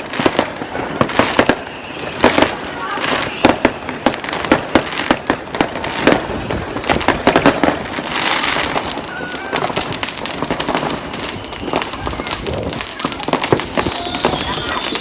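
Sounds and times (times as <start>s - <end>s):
fireworks banging and crackling: 0.0s - 15.0s.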